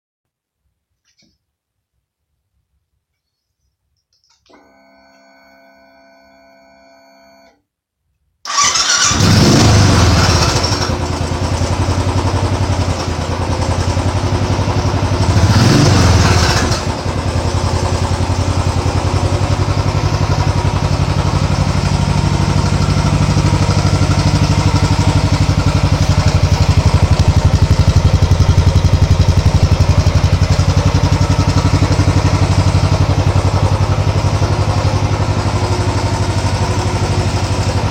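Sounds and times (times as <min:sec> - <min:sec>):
engine starting and idling: 0:08.4 - 0:37.9.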